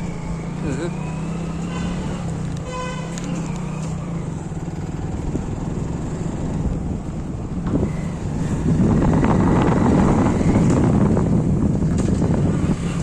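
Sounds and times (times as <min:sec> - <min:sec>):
road noise: 0:00.0 - 0:13.0
vehicle engine drone: 0:00.0 - 0:13.0
vehicle horn honking: 0:01.6 - 0:03.4.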